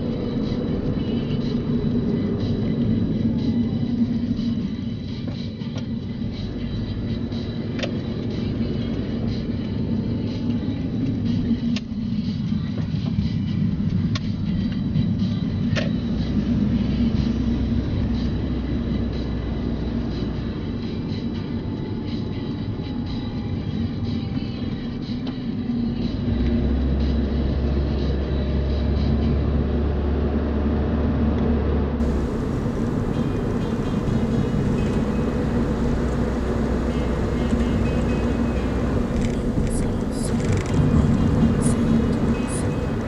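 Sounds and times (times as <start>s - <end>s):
car engine and tyre hum: 32.0s - 43.0s.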